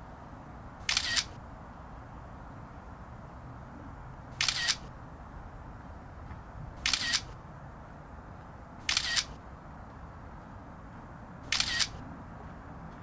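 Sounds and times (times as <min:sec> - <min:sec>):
camera shutter double click: 0:00.8 - 0:01.4, 0:04.4 - 0:04.9, 0:06.8 - 0:07.4, 0:08.8 - 0:09.4, 0:11.5 - 0:12.0.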